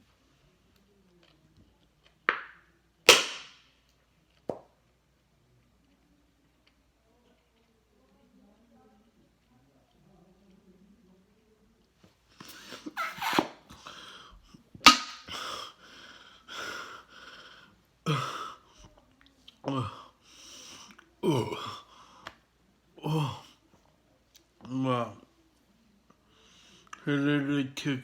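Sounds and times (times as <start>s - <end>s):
person gasping and panting: 15.3s - 18.8s.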